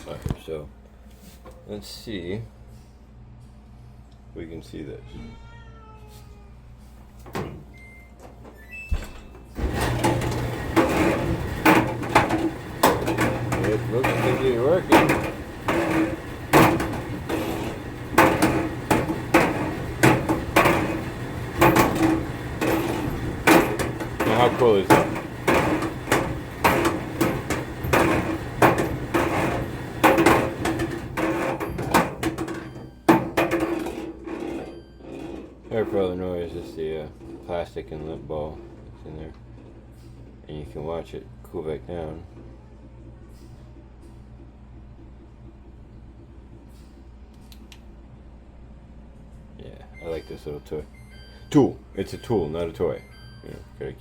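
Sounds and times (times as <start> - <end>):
dryer motor hum: 6.6 - 54.0
tumbling drum clattering: 9.6 - 33.9
short beeps: 49.9 - 53.7.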